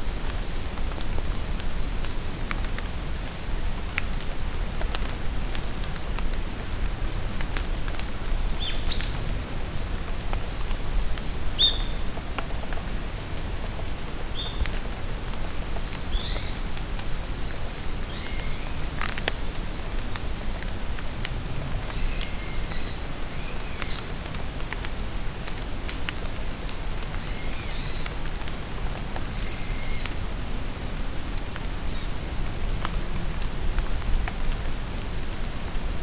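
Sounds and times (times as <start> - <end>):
rain pattering: 0.0 - 36.0
songbirds whistling: 10.5 - 12.0.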